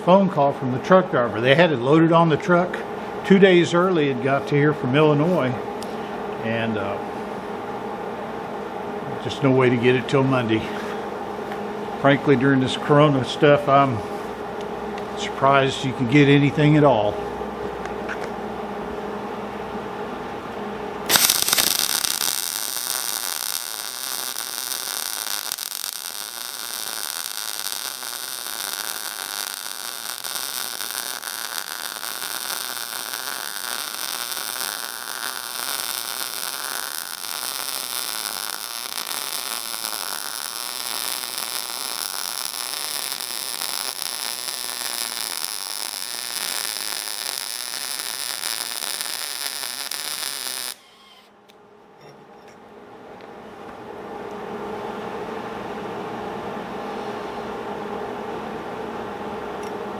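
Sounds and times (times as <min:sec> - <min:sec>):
arc welding hiss: 0:21.0 - 0:51.2.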